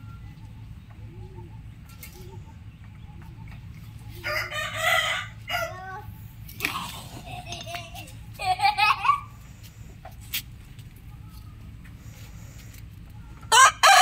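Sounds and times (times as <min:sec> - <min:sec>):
low steady hum: 0:00.0 - 0:14.0
rooster crowing: 0:04.2 - 0:05.8, 0:13.5 - 0:14.0.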